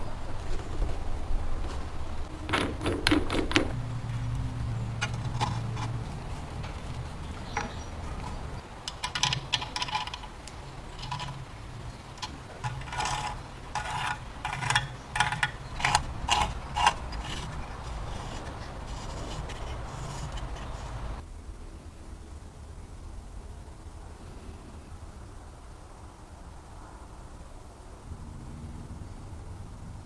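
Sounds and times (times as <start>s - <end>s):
steady low hum: 0.0s - 25.6s
vegetable slicer scraping and clicking: 2.4s - 21.2s.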